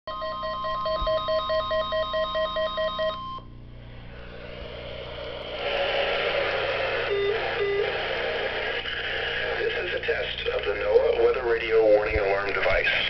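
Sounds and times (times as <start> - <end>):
rapid pulsing beep: 0.1 - 3.5, 7.0 - 7.9
steady warning alarm tone: 0.1 - 3.6, 7.0 - 8.0
radio static hiss: 4.1 - 13.0.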